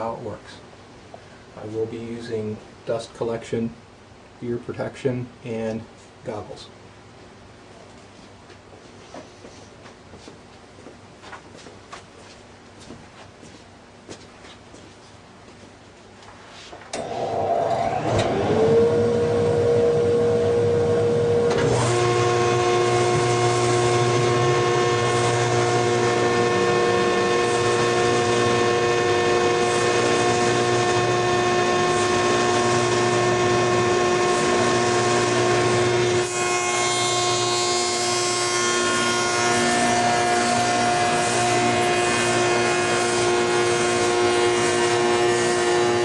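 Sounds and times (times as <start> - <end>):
dust collector whine: 16.9 - 46.0
wood shaper whine: 16.9 - 46.0
cutter cutting wood: 17.0 - 46.0.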